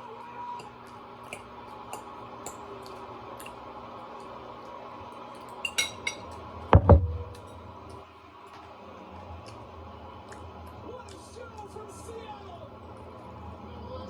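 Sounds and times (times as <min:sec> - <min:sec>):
dishes and cutlery clinking: 0:05.4 - 0:07.6
crockery set down: 0:06.8 - 0:07.6.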